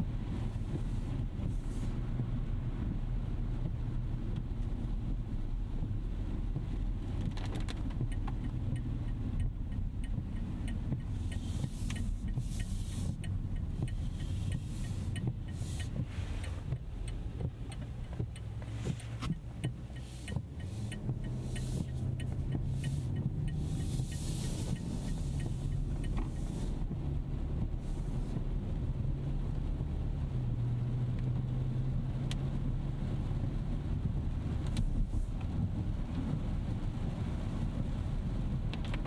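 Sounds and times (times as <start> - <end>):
car engine running: 0.0 - 39.0
rain ticking on car: 0.0 - 39.0
tyre hiss on wet road: 0.5 - 2.0, 11.1 - 16.7, 19.9 - 26.8.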